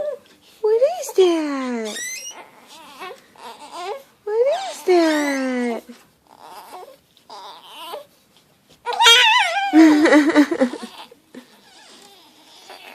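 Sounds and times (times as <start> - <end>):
baby babbling and squealing: 8.9 - 9.8.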